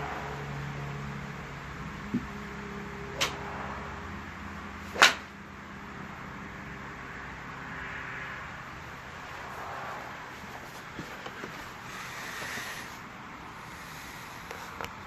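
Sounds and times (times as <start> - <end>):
golf club striking ball: 3.1 - 3.4, 4.9 - 5.4.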